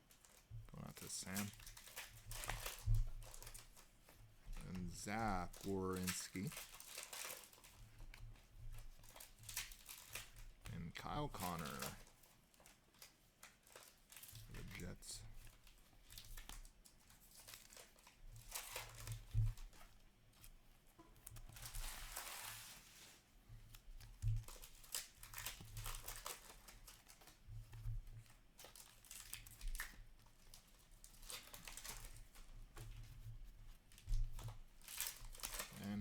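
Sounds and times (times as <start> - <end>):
wrappers crinkling and tearing: 0.0 - 20.6, 21.2 - 36.0
cards rustling and clicking: 0.2 - 19.8, 34.2 - 36.0.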